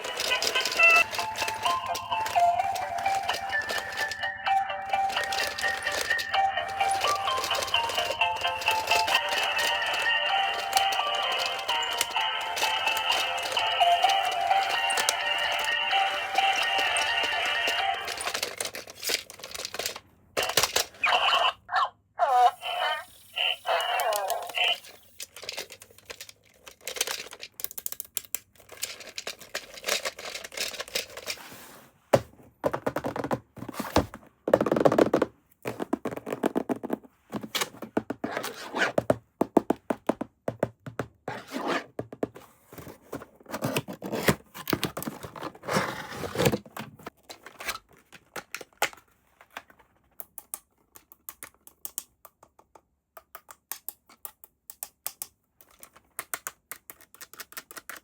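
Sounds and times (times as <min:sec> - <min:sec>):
toy packaging rustling: 0:00.0 - 0:21.5, 0:22.7 - 0:31.8, 0:42.6 - 0:50.2
sharp plastic clicks: 0:25.2 - 0:31.2, 0:50.2 - 0:58.0.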